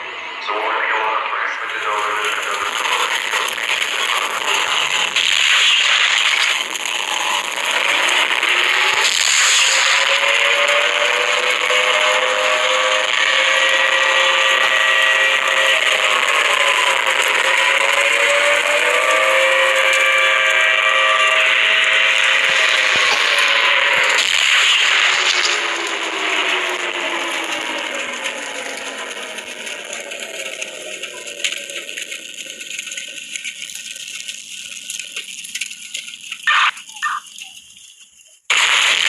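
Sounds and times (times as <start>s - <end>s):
crackling: 0.4s - 10.0s, 19.2s - 39.0s
siren winding down: 4.2s - 28.0s, 36.4s - 37.6s.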